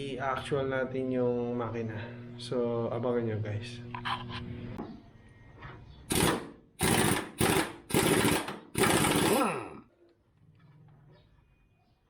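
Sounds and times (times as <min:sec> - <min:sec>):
motor winding down: 0:06.1 - 0:09.8
power tool bursts: 0:06.1 - 0:09.8.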